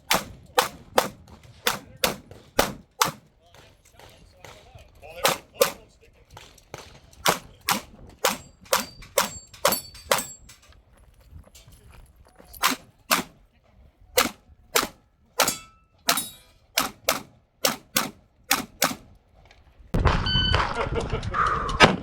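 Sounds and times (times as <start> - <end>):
pistol shots: 0.0 - 3.2, 5.2 - 5.8, 6.7 - 10.4, 12.6 - 13.4, 14.2 - 19.1
metallic ringing: 8.4 - 10.7, 15.4 - 16.7.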